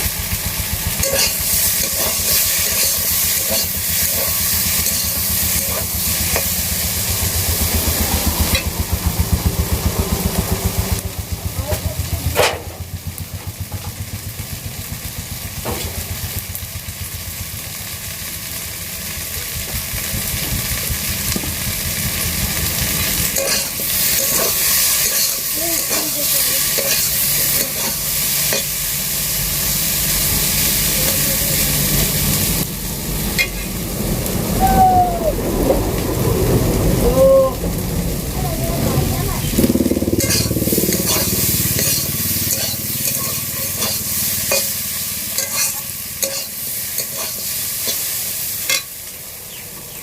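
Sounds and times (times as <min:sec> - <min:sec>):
food sizzling in oil: 0:00.0 - 0:09.2, 0:10.2 - 0:50.0
rapid low throb: 0:06.6 - 0:23.4, 0:35.3 - 0:43.0
spoon scraping pan: 0:23.4 - 0:28.7, 0:40.2 - 0:44.8, 0:45.4 - 0:48.0.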